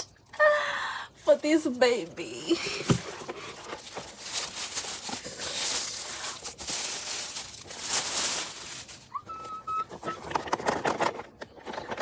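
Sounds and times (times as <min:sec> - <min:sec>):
packaging tearing and crinkling: 0:01.3 - 0:09.2.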